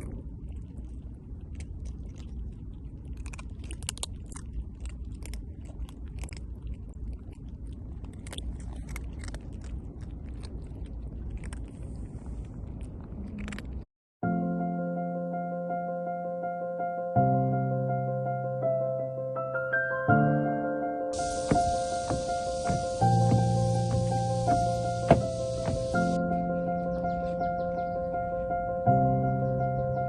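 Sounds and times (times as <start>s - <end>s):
cat chewing crunchy food: 0.0s - 13.8s, 21.2s - 26.2s.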